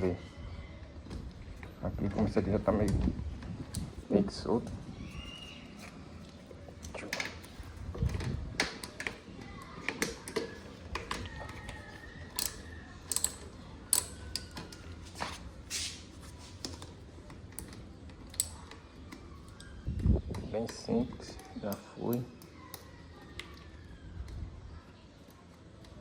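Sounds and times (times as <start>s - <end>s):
hand tool clicking on metal bolt: 12.3s - 14.5s.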